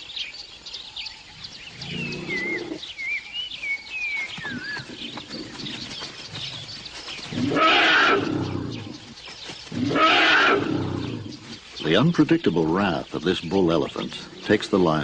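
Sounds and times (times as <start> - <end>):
birds chirping: 0.0 - 15.0
harsh wild animal calls: 1.4 - 2.8, 4.4 - 11.6.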